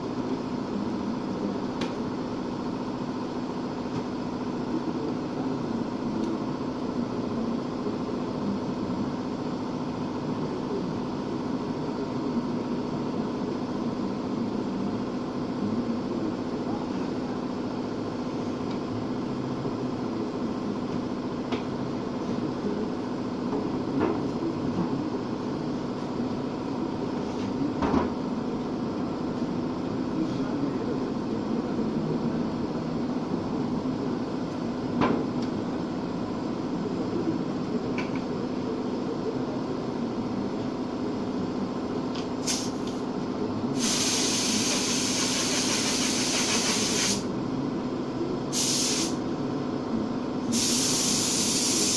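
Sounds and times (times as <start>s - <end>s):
low machine hum: 0.0s - 51.9s
paint spray gun hissing: 43.8s - 47.2s, 48.5s - 49.2s, 50.5s - 51.9s.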